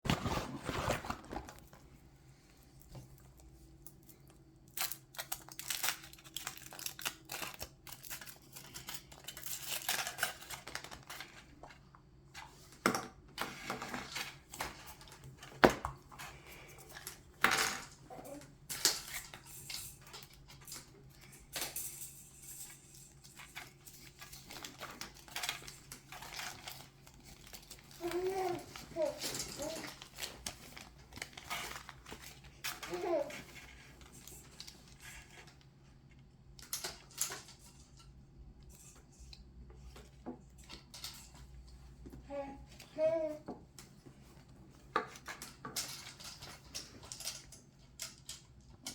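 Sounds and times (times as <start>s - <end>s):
wrapper rustling: 0.1s - 2.0s, 3.2s - 11.6s, 22.2s - 35.6s.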